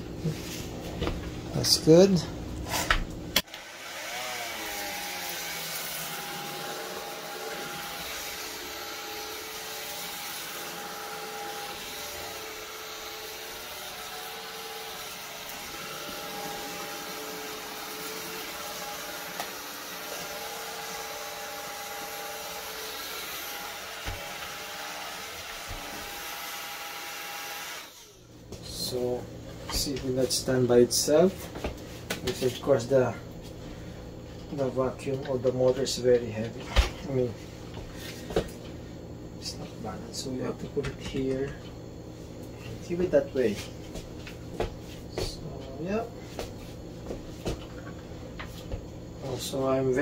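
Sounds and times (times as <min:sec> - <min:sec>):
stick vacuum motor whine: 0:01.6 - 0:31.3.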